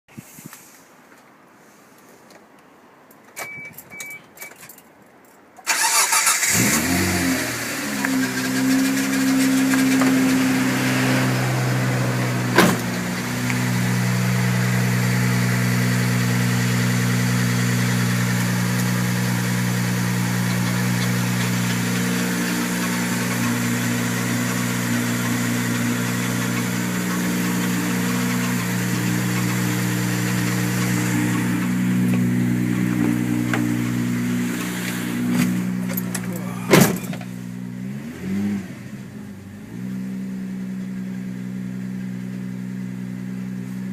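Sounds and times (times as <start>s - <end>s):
short high beeps: 3.4s - 4.6s
car engine cranking and starting: 5.6s - 43.9s
car engine idling with rattle: 7.6s - 37.8s.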